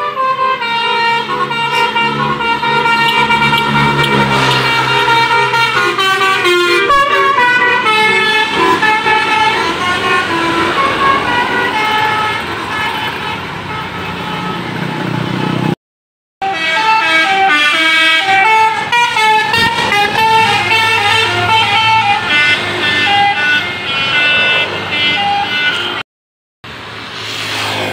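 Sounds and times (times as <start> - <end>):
multi-tone bus horn melody: 0.0 - 15.8, 16.4 - 26.0.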